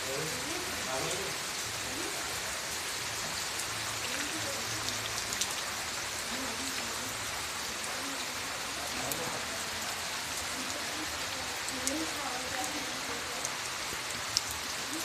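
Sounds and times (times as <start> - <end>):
steady rain falling: 0.0 - 15.0
raindrops ticking: 11.5 - 15.0.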